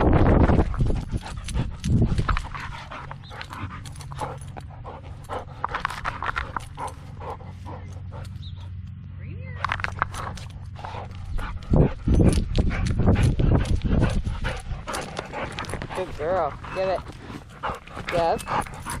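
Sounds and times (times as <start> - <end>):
dog panting: 0.4 - 8.8, 10.0 - 19.0.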